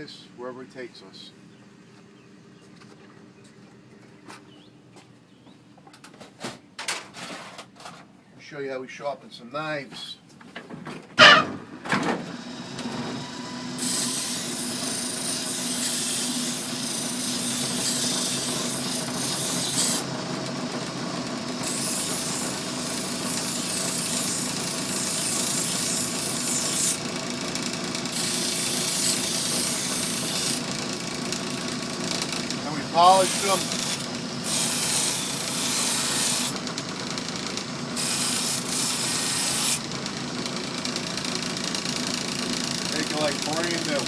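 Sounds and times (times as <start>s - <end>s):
grinder motor humming: 12.2s - 44.0s
knife blade grinding hiss: 38.0s - 39.8s.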